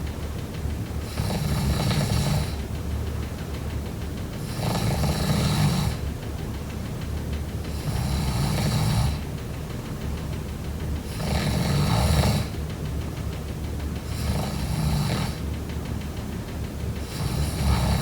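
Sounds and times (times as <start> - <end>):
person snoring: 1.1 - 2.6, 4.4 - 6.0, 7.7 - 9.2, 11.1 - 12.5, 14.1 - 15.4, 17.1 - 18.0.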